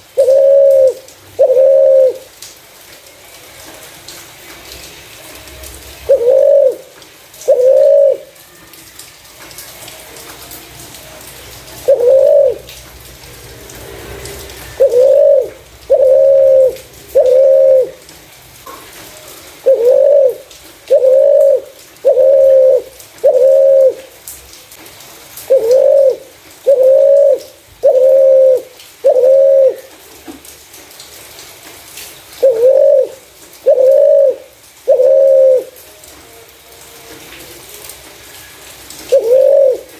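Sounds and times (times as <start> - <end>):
dove cooing: 0.1 - 2.4, 6.0 - 8.4, 11.7 - 12.8, 14.6 - 18.1, 18.7 - 24.2, 25.5 - 30.0, 32.4 - 35.8, 39.0 - 39.9.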